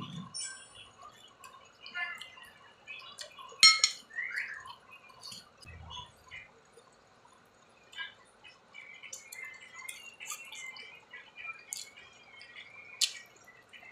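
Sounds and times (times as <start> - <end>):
wet chewing and smacking: 9.0 - 10.9, 11.6 - 13.4.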